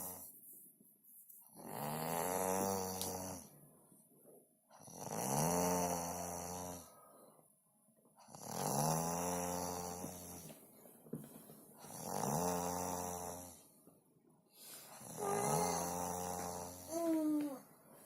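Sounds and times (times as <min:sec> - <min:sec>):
person snoring: 0:01.6 - 0:03.5, 0:04.8 - 0:06.9, 0:08.3 - 0:10.4, 0:11.8 - 0:13.6, 0:14.9 - 0:17.6.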